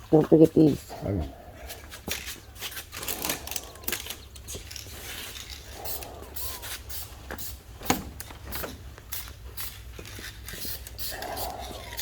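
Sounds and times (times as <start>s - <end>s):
spray paint can hissing: 5.8s - 7.6s, 8.5s - 12.0s.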